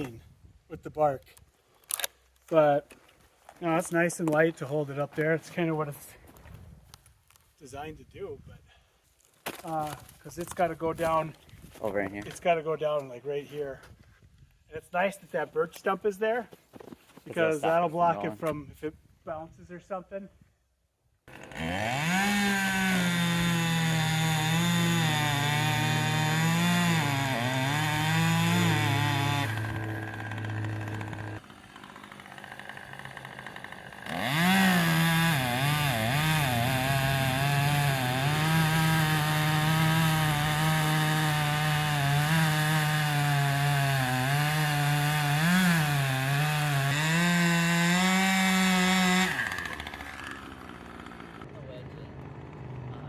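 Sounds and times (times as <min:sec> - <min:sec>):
chainsaw cutting wood: 0:21.3 - 0:51.5.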